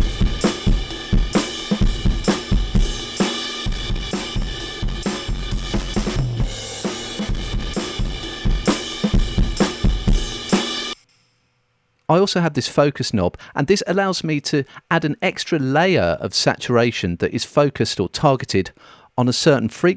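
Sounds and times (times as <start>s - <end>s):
drum kit groove: 0.0s - 11.0s.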